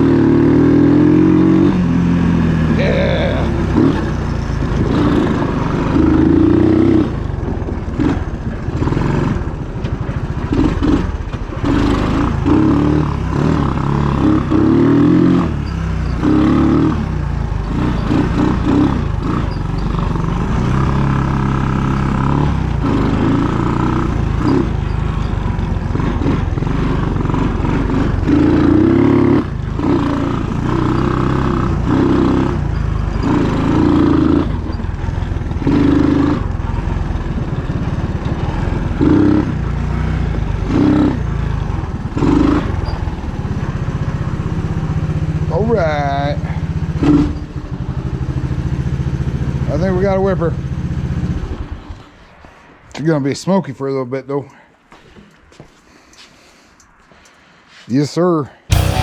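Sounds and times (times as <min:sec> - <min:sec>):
engine revving up and down: 0:00.0 - 0:09.6, 0:10.4 - 0:37.4, 0:58.7 - 0:59.0.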